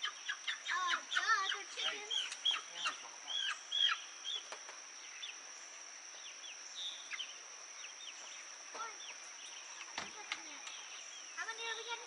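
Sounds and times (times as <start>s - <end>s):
chickens peeping: 0.0s - 5.4s.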